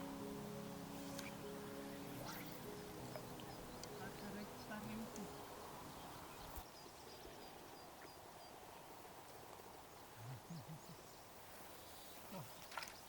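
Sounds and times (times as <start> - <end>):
distant bird high notes: 0.0 - 6.6
faint low sounds: 0.0 - 6.6.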